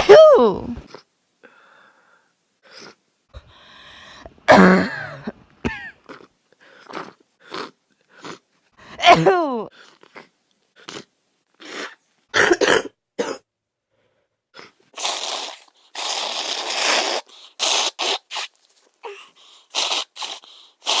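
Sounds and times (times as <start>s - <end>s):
woman coughing: 4.5s - 5.9s, 8.9s - 9.6s, 12.4s - 13.4s.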